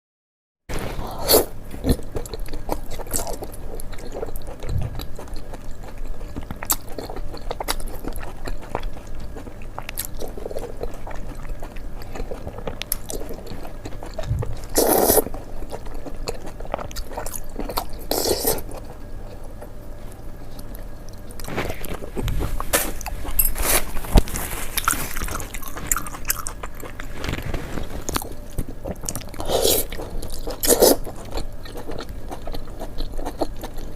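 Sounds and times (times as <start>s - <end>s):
person chewing crunchy food: 0.7s - 33.9s.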